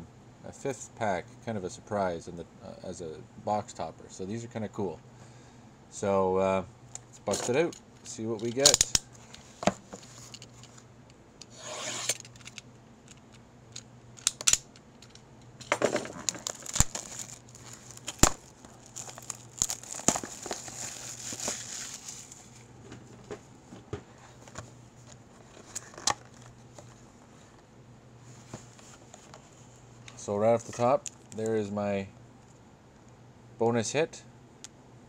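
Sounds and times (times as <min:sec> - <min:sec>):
wrapping tearing and crinkling: 0:16.1 - 0:22.7.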